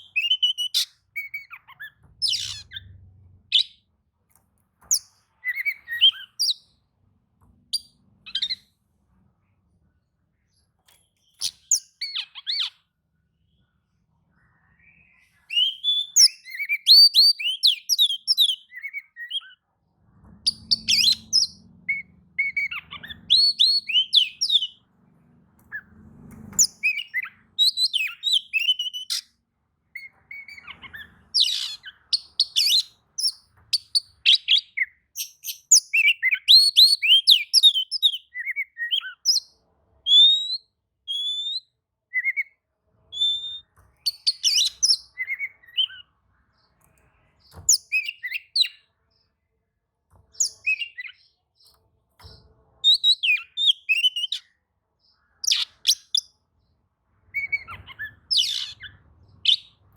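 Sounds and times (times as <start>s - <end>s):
songbird chirping and whistling: 0.0s - 3.9s, 4.8s - 6.8s, 7.7s - 8.7s, 10.4s - 12.9s, 14.3s - 19.6s, 20.4s - 24.8s, 26.5s - 46.7s, 47.4s - 48.9s, 50.4s - 51.7s, 52.8s - 54.6s, 55.2s - 56.4s, 57.3s - 59.9s.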